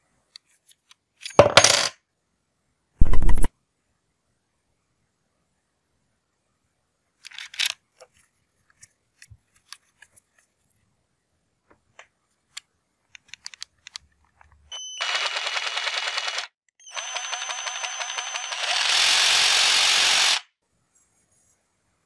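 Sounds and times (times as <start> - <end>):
light clicks and taps of handling: 7.2 - 10.8
electric jigsaw whining: 14.8 - 20.5.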